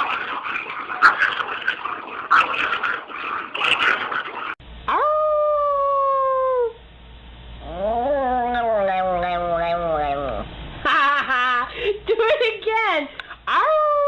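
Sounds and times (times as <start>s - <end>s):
dog howling: 7.6s - 10.4s.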